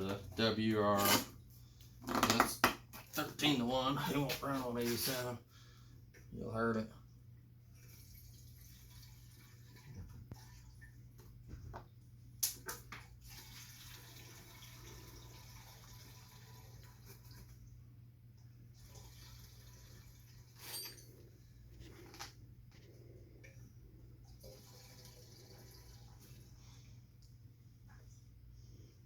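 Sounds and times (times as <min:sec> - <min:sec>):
gasoline trickling into tank: 0:07.7 - 0:11.1, 0:12.8 - 0:17.8, 0:18.6 - 0:20.7, 0:24.2 - 0:26.9.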